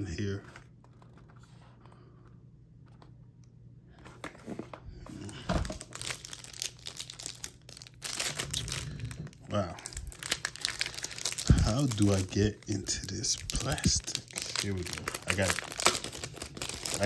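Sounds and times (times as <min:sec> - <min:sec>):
plastic packaging crinkling: 0:05.2 - 0:17.0.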